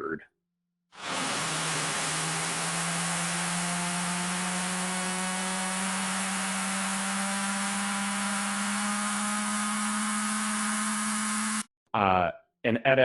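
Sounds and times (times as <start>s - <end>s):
loud hiss: 1.0s - 4.5s
low buzzing hum: 1.0s - 11.6s.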